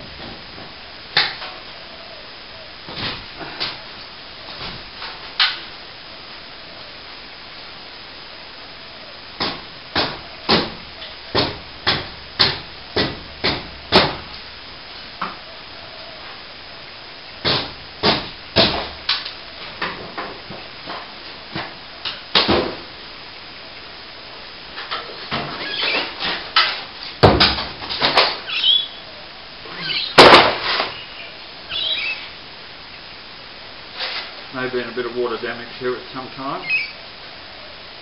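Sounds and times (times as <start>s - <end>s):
knocks against ceiling plaster: 17.4s - 19.0s.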